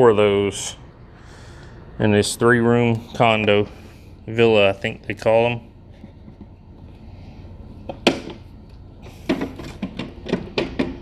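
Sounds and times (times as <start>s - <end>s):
low steady hum: 0.0s - 11.0s
knocks and clicks of handling: 7.8s - 11.0s.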